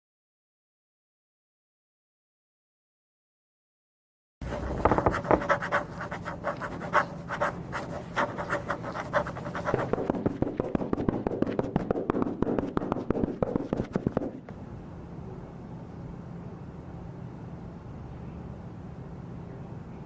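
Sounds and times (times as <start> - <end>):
crackling and scratching clicks: 4.4 - 14.5
low steady hum: 4.4 - 20.0.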